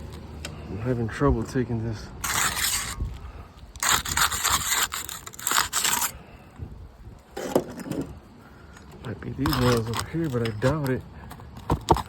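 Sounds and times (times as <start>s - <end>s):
shingle scraping against roof: 2.2s - 6.3s, 7.3s - 8.2s, 8.8s - 12.0s.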